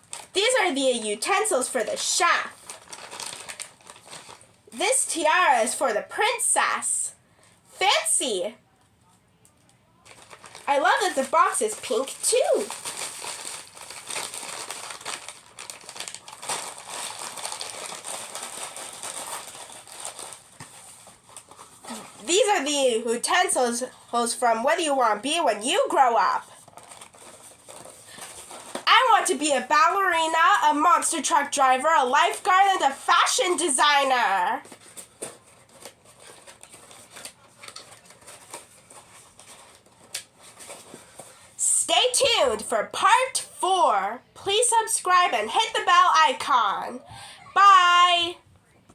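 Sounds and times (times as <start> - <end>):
packaging rustling: 0.0 - 0.4, 2.0 - 4.6, 10.0 - 22.3, 26.4 - 29.2, 34.6 - 41.6
plastic and cardboard crinkling: 0.0 - 4.6, 8.9 - 22.7, 25.3 - 41.6.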